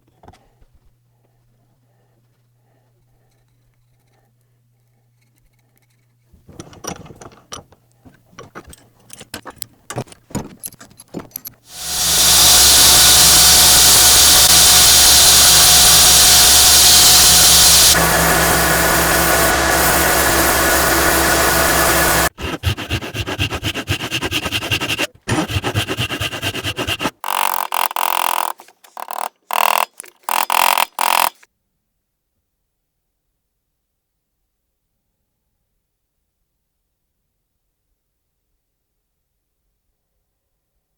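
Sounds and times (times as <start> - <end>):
loud hiss: 11.7 - 22.3
power tool motor running: 11.7 - 22.3, 26.7 - 31.4.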